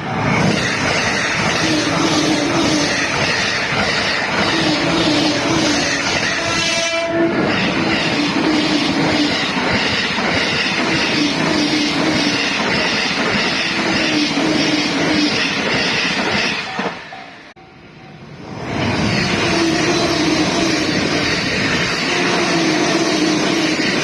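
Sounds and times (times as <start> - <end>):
train wheels clattering on rails: 0.0 - 17.5, 18.7 - 24.0
crossing warning bells: 0.0 - 24.0
train horn: 4.5 - 7.7, 19.2 - 21.1, 22.0 - 23.7.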